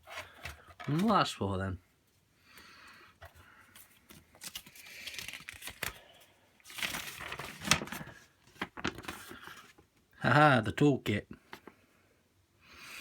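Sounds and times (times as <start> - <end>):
plastic packaging crinkling: 3.9 - 9.8.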